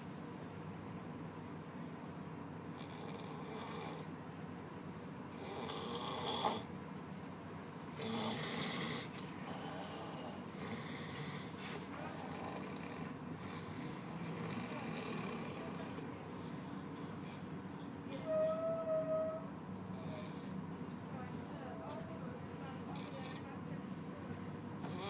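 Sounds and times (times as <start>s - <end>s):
steady low hum: 0.0s - 25.0s
man snoring loudly: 2.8s - 4.1s, 5.4s - 6.7s, 8.0s - 16.1s.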